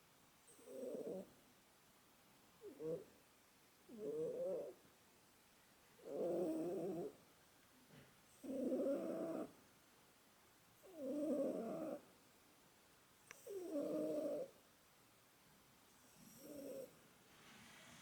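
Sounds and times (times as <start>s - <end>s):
cat snoring: 0.5s - 1.3s, 2.6s - 3.1s, 3.9s - 4.8s, 6.0s - 7.2s, 8.4s - 9.5s, 10.8s - 12.0s, 13.4s - 14.5s, 16.0s - 18.0s.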